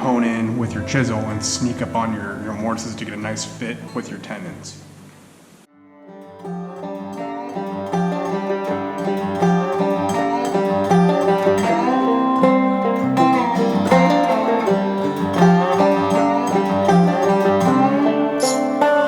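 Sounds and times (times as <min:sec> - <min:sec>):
upbeat bluegrass banjo and guitar: 0:06.2 - 0:19.0.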